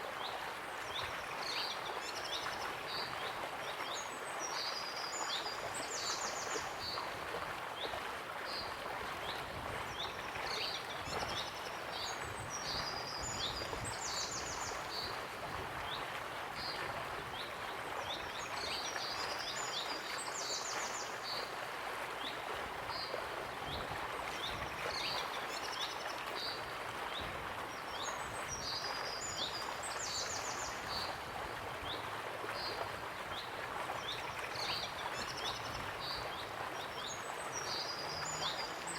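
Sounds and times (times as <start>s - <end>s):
songbirds chirping: 22.2s - 38.9s
waterfall running: 29.6s - 38.9s.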